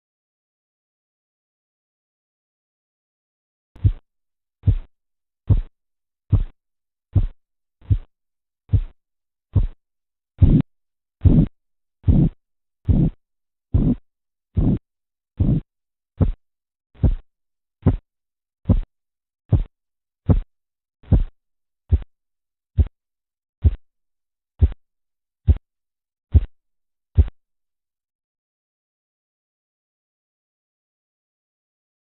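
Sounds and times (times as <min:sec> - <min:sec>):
heartbeat through stethoscope: 0:03.8 - 0:04.0, 0:04.6 - 0:04.9, 0:05.5 - 0:08.1, 0:08.7 - 0:09.8, 0:10.4 - 0:14.8, 0:15.4 - 0:16.4, 0:17.0 - 0:18.9, 0:19.5 - 0:22.1, 0:22.8 - 0:23.0, 0:23.6 - 0:23.8, 0:24.6 - 0:24.8, 0:25.4 - 0:25.7, 0:26.3 - 0:26.6, 0:27.2 - 0:27.4.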